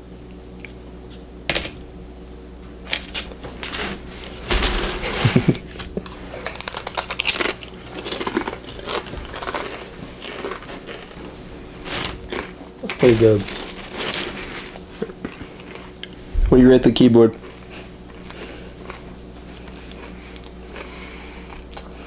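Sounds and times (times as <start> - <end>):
chips crunching and crinkling: 6.0 - 16.2, 17.4 - 22.0.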